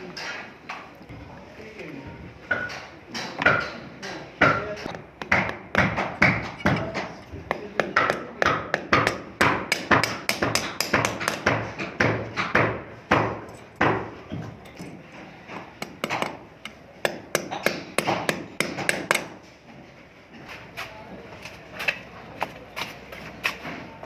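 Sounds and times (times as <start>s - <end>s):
sharp hammer strikes: 4.4s - 14.1s, 15.8s - 19.4s.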